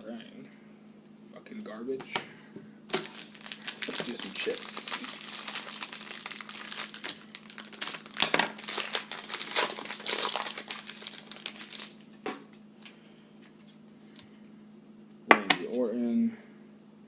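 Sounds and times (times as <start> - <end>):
faint steady hum: 0.0 - 17.0
wrapper crinkling and tearing: 2.9 - 12.1.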